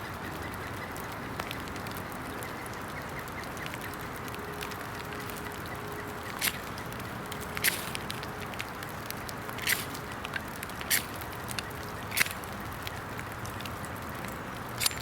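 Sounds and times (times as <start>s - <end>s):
steady hiss: 4.1s - 15.0s
flint and steel strikes: 7.6s - 8.0s, 12.1s - 12.4s, 14.8s - 15.0s.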